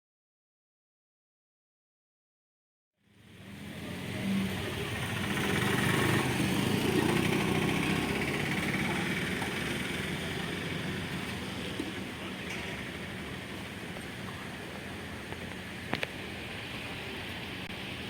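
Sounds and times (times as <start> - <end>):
engine running steadily: 3.1 - 18.0
broad rumble and hiss: 6.2 - 18.0.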